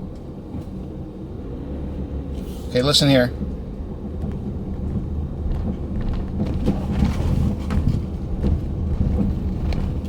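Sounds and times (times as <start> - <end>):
car rolling rumble: 0.0 - 10.0
car suspension knocking: 3.3 - 10.0.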